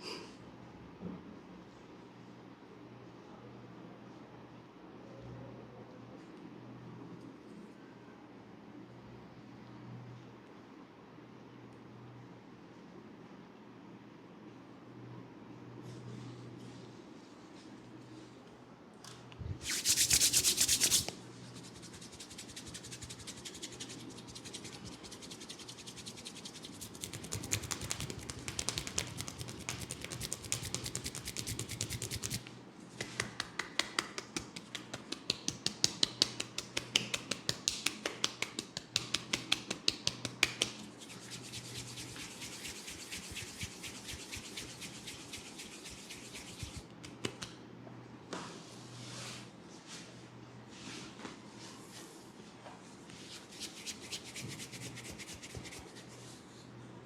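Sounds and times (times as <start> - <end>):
hands rubbing hair and scalp: 19.6 - 32.4, 33.0 - 47.6, 53.2 - 56.2.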